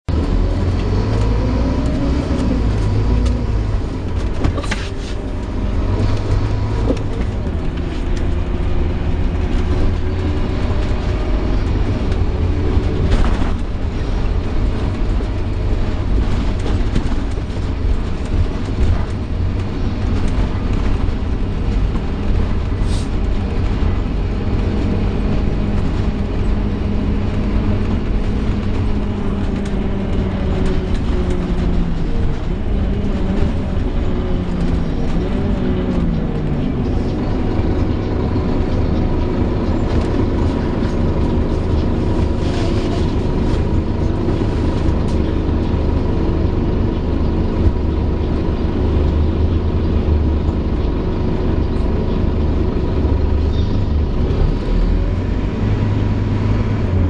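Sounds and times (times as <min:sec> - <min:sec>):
bus diesel engine: 0:00.0 - 0:57.0
road noise: 0:00.0 - 0:57.0
bus groaning: 0:00.1 - 0:57.0.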